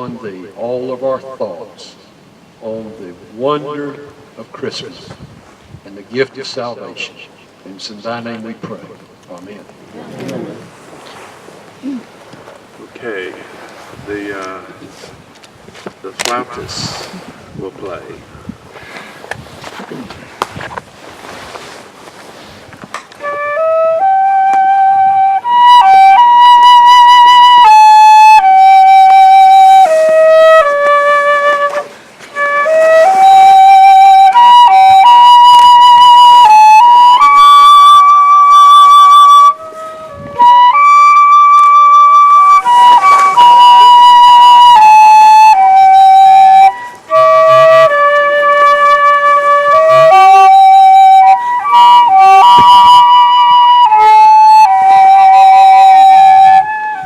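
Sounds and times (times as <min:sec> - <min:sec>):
solo flute melody: 0:23.1 - 0:57.0.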